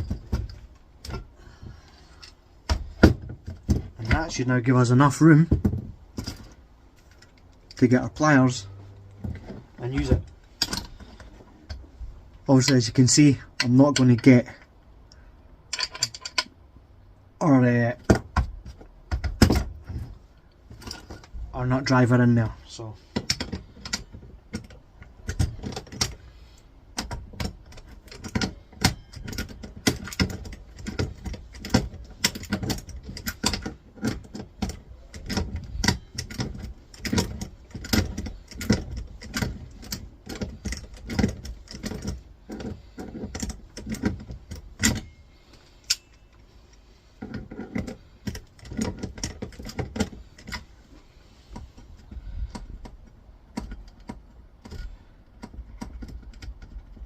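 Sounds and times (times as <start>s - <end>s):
pliers clinking on metal: 45.8s - 46.4s.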